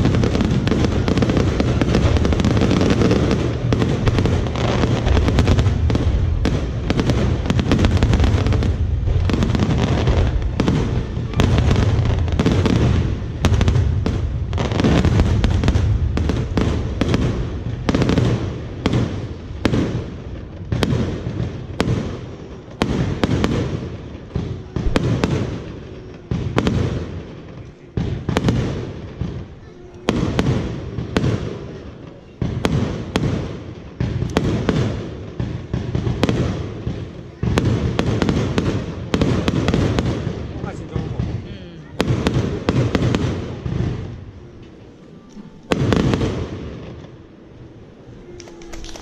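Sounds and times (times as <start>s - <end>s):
fireworks bangs and crackles: 0.0s - 49.0s.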